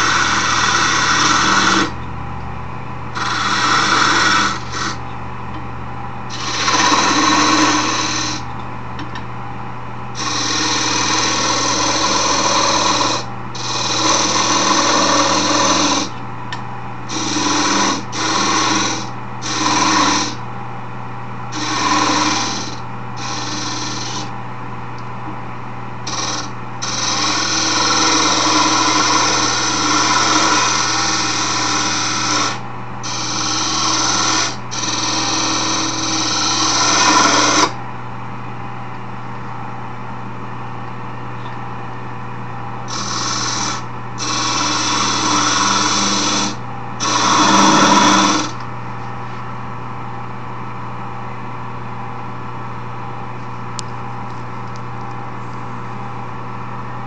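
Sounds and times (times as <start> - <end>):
lathe motor humming: 0.0 - 2.0, 3.2 - 5.0, 6.3 - 8.4, 10.2 - 16.2, 17.1 - 20.4, 21.5 - 24.3, 26.1 - 37.7, 42.9 - 48.6
tool scraping spinning wood: 0.0 - 2.0, 3.2 - 5.0, 6.3 - 8.5, 10.2 - 16.2, 17.1 - 20.4, 21.5 - 24.3, 26.0 - 37.8, 42.9 - 48.6.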